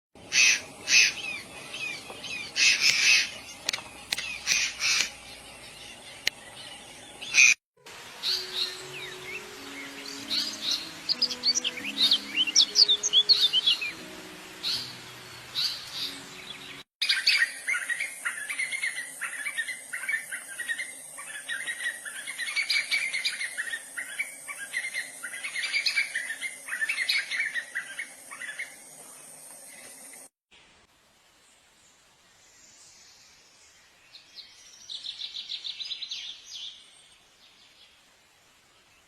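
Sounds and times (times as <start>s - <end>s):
small birds chirping: 0.2s - 7.6s, 8.2s - 30.3s
steady high hiss: 0.2s - 39.0s
slow low melody: 7.8s - 16.8s.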